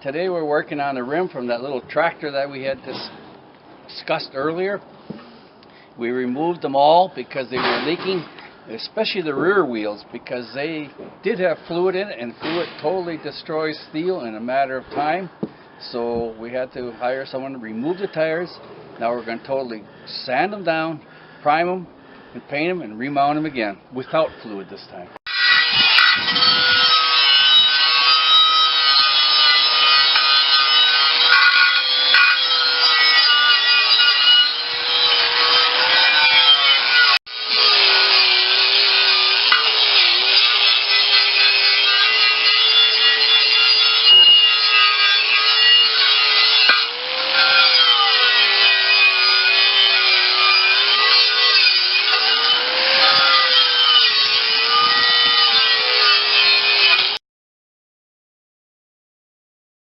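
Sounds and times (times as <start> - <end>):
power sander grinding on metal: 25.3 - 57.2.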